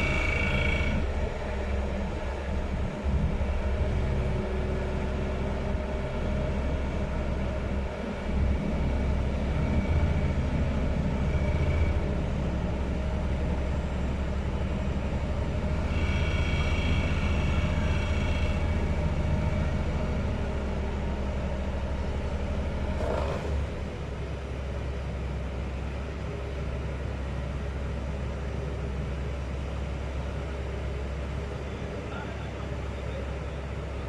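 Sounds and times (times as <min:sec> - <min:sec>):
high whine: 0:00.0 - 0:12.5
machinery deep drone: 0:00.0 - 0:34.0.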